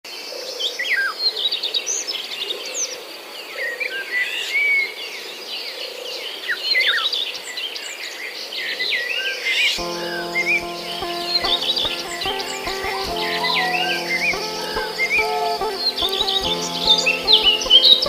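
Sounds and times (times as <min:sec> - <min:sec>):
birds chirping: 0:09.8 - 0:18.0.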